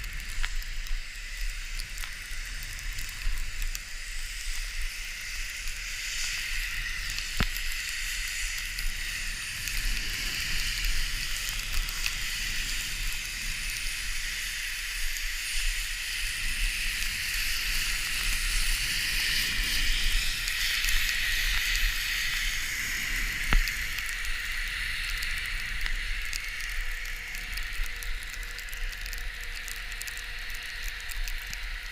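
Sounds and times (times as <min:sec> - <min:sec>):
skis hissing on snow: 0:00.0 - 0:31.9
wind rumbling on microphone: 0:00.0 - 0:31.9.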